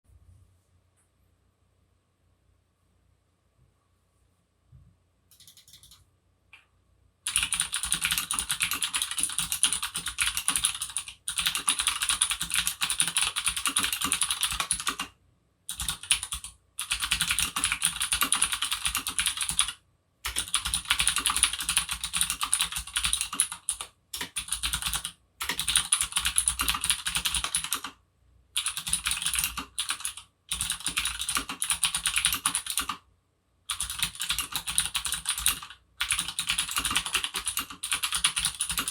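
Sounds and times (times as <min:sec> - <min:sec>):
fast clicky keyboard typing: 0:05.3 - 0:06.0, 0:07.3 - 0:15.1, 0:15.7 - 0:28.0, 0:28.6 - 0:33.0, 0:33.7 - 0:38.9.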